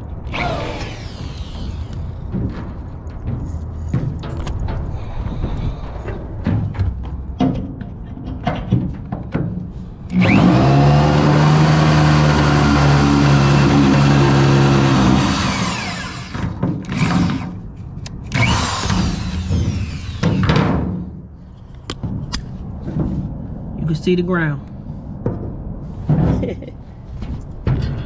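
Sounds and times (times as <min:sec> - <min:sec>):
electric drill boring metal: 0:00.3 - 0:02.3, 0:10.1 - 0:17.6, 0:18.3 - 0:20.6.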